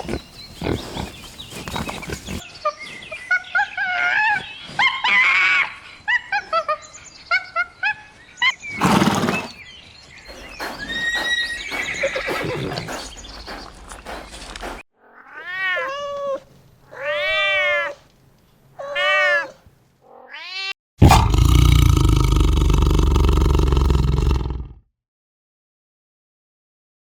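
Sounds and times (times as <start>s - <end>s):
bird-like chirps: 0.0s - 3.8s, 8.3s - 14.4s
farm animal noises: 0.0s - 9.6s, 10.2s - 18.1s
loud rough low animal call: 21.0s - 24.8s.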